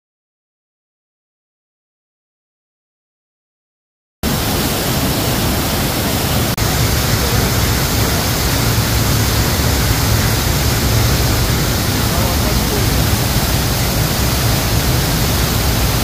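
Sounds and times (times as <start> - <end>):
waterfall rushing: 4.2 - 16.0.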